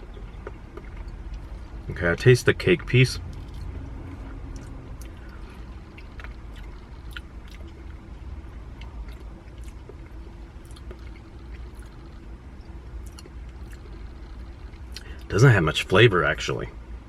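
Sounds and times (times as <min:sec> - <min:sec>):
steady low hum: 0:00.0 - 0:17.0
person chewing ice cream: 0:00.1 - 0:01.9, 0:02.8 - 0:15.3
wet mouth clicks: 0:13.0 - 0:15.2.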